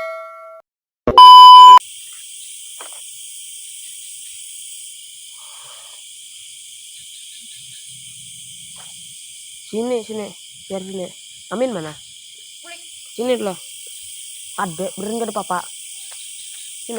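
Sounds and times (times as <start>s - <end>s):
loud electronic beep: 1.1s - 1.8s
crickets chirring: 1.8s - 16.9s.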